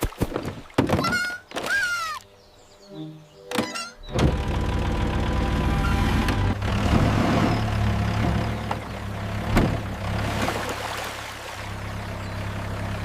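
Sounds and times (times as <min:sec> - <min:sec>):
background music: 0:02.3 - 0:04.2
excavator engine running: 0:03.5 - 0:13.0.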